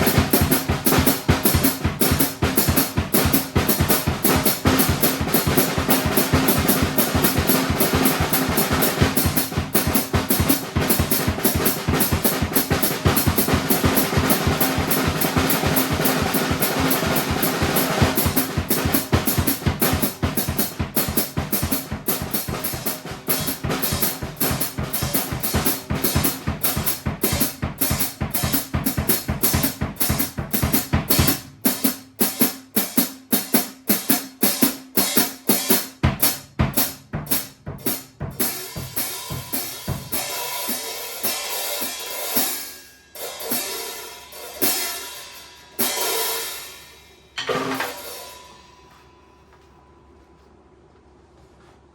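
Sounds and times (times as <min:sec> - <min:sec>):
bass drum: 0:00.0 - 0:31.6, 0:36.0 - 0:40.3
drum kit playing: 0:00.0 - 0:49.2.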